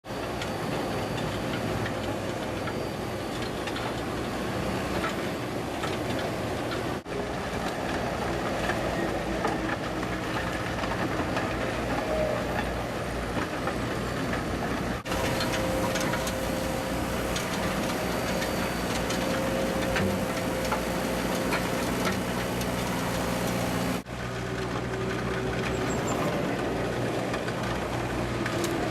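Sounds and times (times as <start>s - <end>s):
diesel engine under load: 0.1s - 28.9s
drum cutter grinding concrete: 15.0s - 28.9s.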